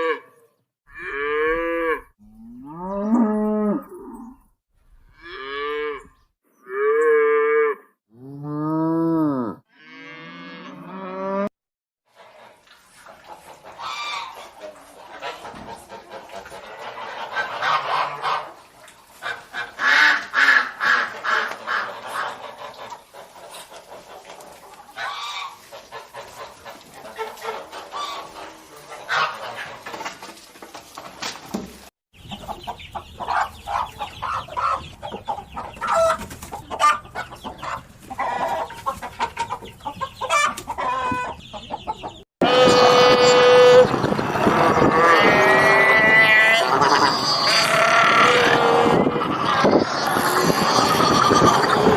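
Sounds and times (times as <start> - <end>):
chickens clucking: 12.2 - 51.9.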